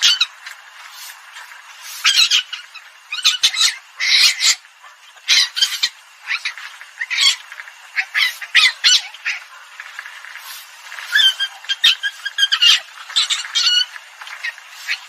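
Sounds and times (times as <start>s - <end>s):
palm civet shrill calls: 1.9s - 9.5s, 10.9s - 15.0s.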